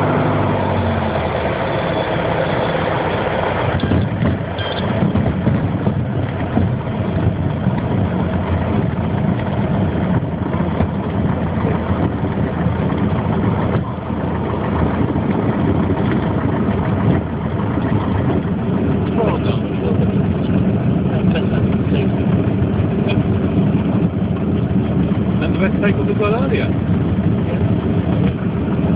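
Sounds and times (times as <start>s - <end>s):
piston aircraft engine running: 0.0s - 28.9s.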